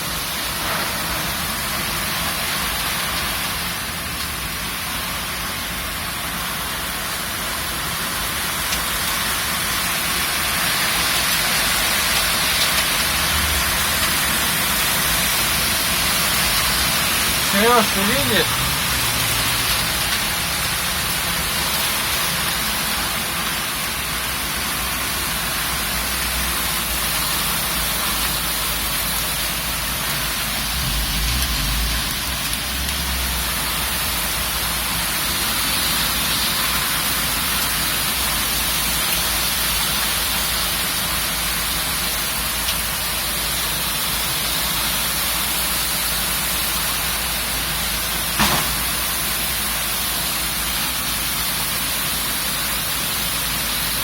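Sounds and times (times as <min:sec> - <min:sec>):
heavy rain: 0:00.0 - 0:54.0
brief knock: 0:48.4 - 0:48.8.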